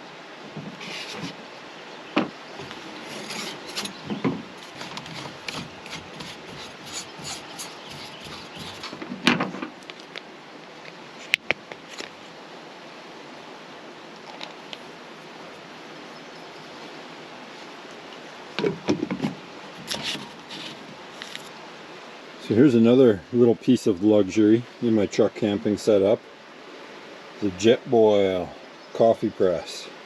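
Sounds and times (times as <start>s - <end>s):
objects rubbing and scraping: 0.6s - 1.4s, 2.2s - 10.2s, 18.6s - 21.5s
knocks: 2.2s - 2.8s.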